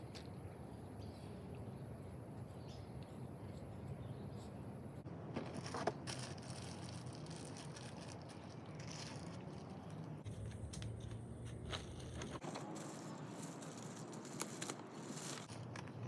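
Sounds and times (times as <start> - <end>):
low steady hum: 0.0 - 16.0
packaging rustling: 5.4 - 10.0, 11.6 - 16.0.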